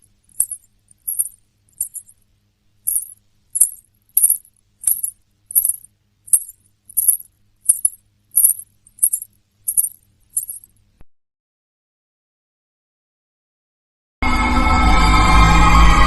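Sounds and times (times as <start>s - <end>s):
small metal bells jingling: 0.3s - 2.1s, 2.9s - 10.7s.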